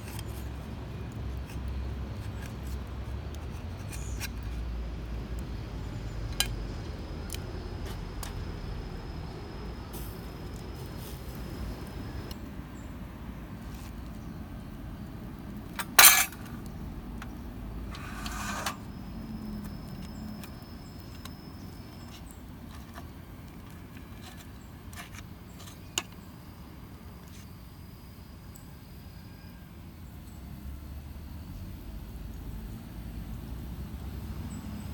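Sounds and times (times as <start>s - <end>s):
metal cookware clanking: 15.8s - 16.5s
metal cookware scraping rattle: 15.8s - 16.5s, 17.9s - 18.9s.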